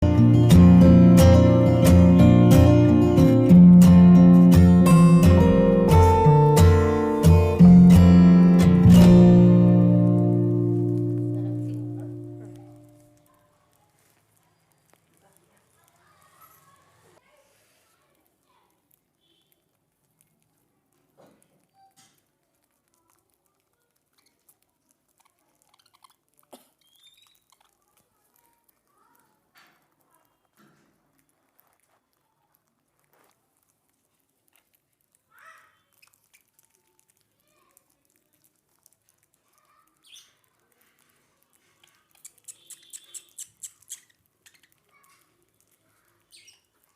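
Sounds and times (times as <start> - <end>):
short high bird chirp: 26.8 - 27.5, 42.2 - 44.7
birds pecking clicks: 34.1 - 46.9.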